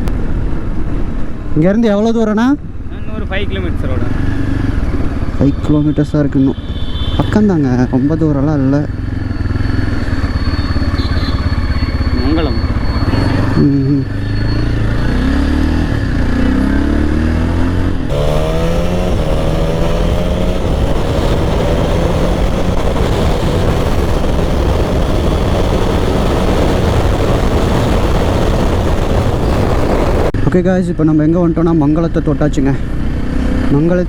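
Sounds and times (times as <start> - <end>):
motorcycle engine accelerating: 14.9 - 30.4
wind noise on microphone: 18.1 - 30.4.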